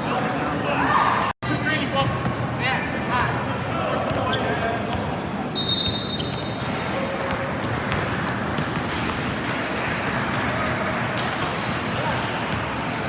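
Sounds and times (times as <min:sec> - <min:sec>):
crowd chatter: 0:00.0 - 0:13.0
referee's whistle blowing: 0:05.6 - 0:06.8.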